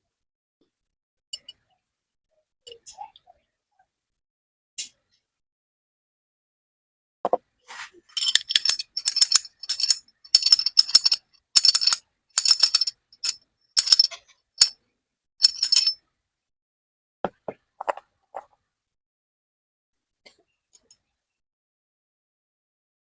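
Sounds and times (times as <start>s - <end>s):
small metal parts clinking: 8.1s - 14.8s, 15.4s - 16.0s.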